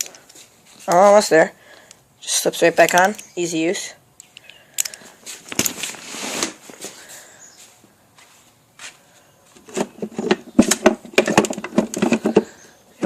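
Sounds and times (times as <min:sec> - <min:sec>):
padlock being handled: 0:00.0 - 0:01.2, 0:01.8 - 0:03.6, 0:04.2 - 0:05.9.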